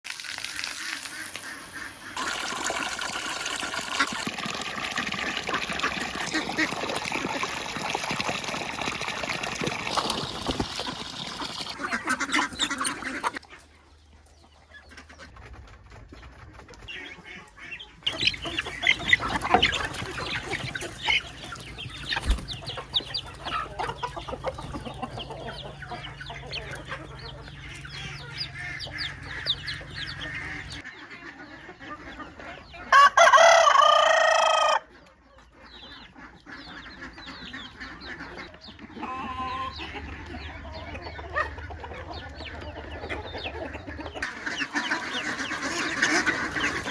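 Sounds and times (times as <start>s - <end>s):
chickens clucking: 0.6s - 46.9s
rooster crowing loudly: 32.9s - 34.8s.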